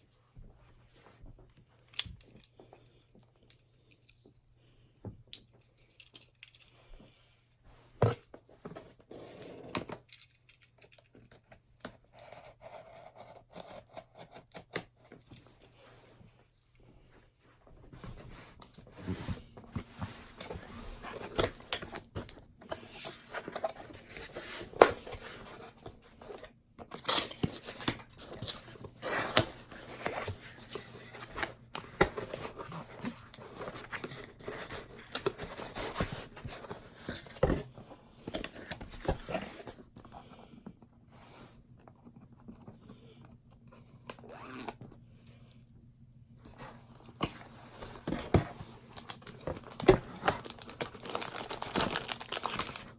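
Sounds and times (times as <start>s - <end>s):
packaging tearing and rustling: 47.6s - 52.9s.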